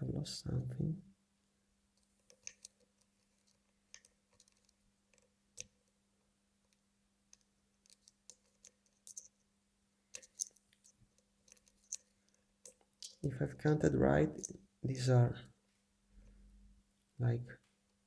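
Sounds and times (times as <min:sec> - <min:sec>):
lock pick clicking and scratching: 0:02.2 - 0:05.8, 0:07.3 - 0:09.4, 0:10.1 - 0:13.2.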